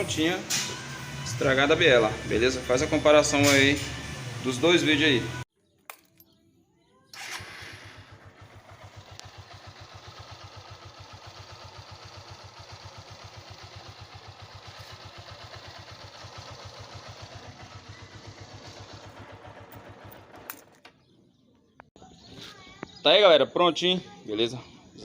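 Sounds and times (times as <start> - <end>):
motorcycle engine idling: 7.2 - 22.2.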